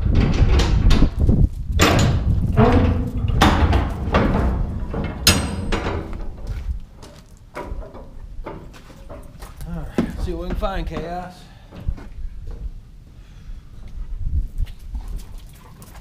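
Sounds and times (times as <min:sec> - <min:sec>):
low rumble: 0:00.0 - 0:07.0
metal doors clanking and scraping: 0:00.0 - 0:09.4
door creak: 0:01.8 - 0:06.5.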